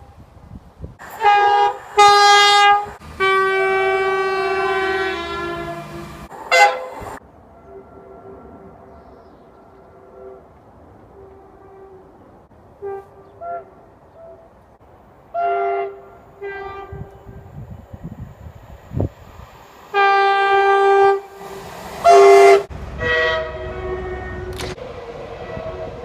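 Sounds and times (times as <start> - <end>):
train rumble: 0.0 - 26.0
train horn blasts: 1.0 - 14.6, 15.3 - 17.6, 19.9 - 24.8, 25.4 - 26.0.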